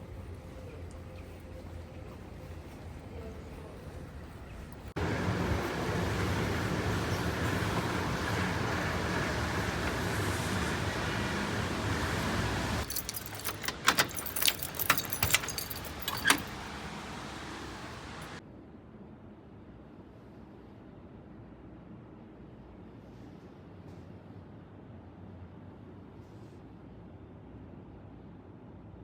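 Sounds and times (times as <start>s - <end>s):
vehicle road noise: 0.1s - 18.4s
keys jangling and clicking: 12.8s - 16.8s.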